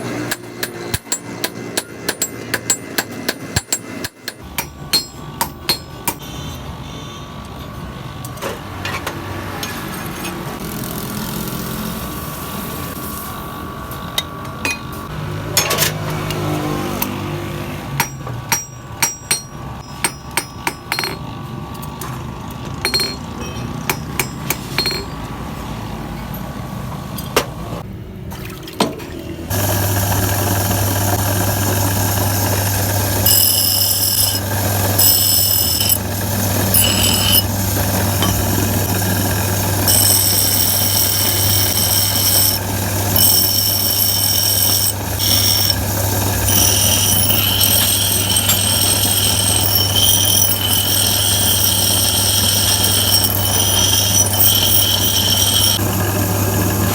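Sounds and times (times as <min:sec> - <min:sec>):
power tool motor humming: 0:29.5 - 0:55.9
high-pitched metal whine: 0:33.2 - 0:56.1.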